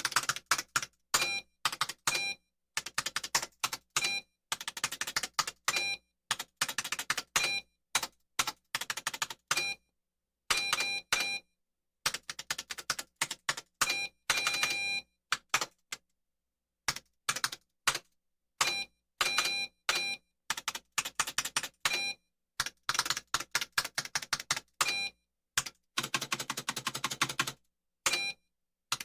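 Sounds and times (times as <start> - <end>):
cartoon typewriter clacking: 25.6 - 27.6.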